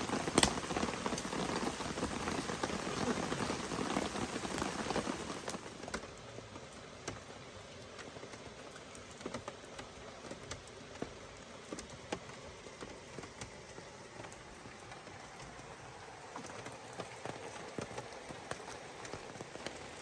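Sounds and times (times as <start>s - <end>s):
steady rain hiss: 0.0s - 9.3s.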